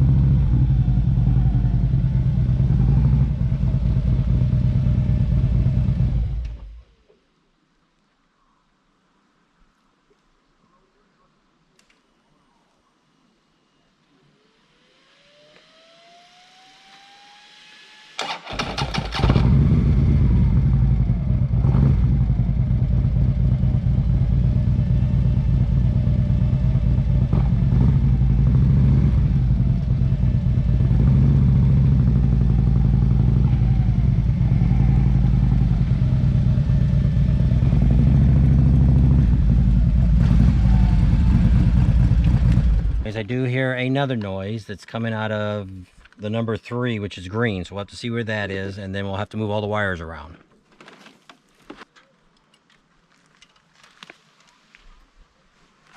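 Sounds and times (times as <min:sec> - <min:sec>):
motorcycle engine running: 0:00.0 - 0:06.8, 0:18.2 - 0:43.2
faint rising whine: 0:00.0 - 0:09.4, 0:12.3 - 0:18.2, 0:19.5 - 0:43.6.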